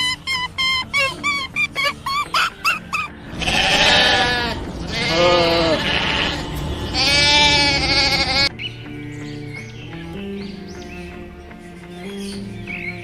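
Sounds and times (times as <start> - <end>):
goat bleating: 0.0 - 8.5.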